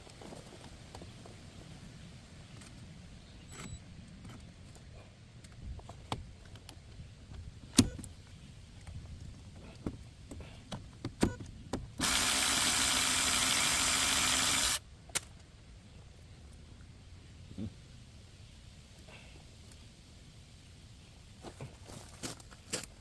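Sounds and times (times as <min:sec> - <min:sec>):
pressurised spray hissing: 0:12.0 - 0:14.8.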